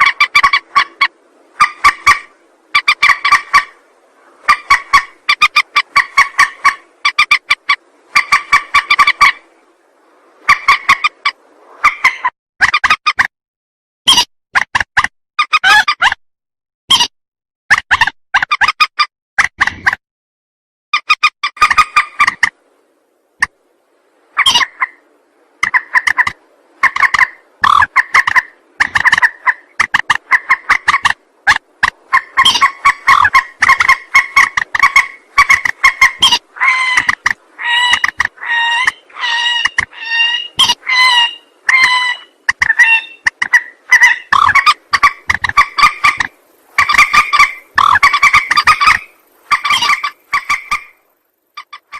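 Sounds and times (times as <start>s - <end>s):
rail bird calling harsh notes: 0.0s - 9.5s, 24.4s - 51.9s.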